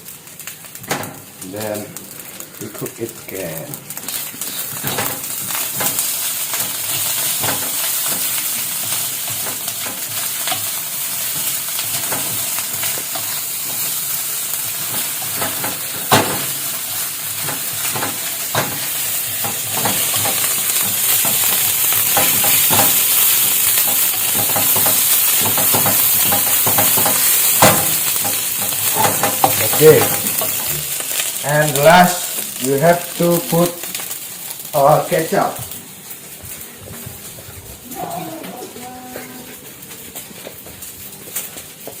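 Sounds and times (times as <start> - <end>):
rice sizzling in a frying pan: 0.0 - 42.0
utensil scraping and clicking on pan: 4.1 - 14.1, 14.7 - 16.6, 17.4 - 31.3.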